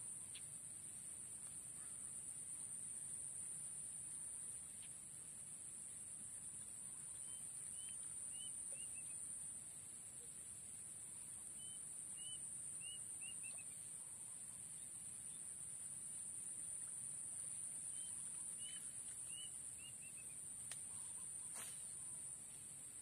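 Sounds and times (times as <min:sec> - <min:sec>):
small bird chirping: 0:07.1 - 0:09.2, 0:11.6 - 0:13.8, 0:17.9 - 0:22.2.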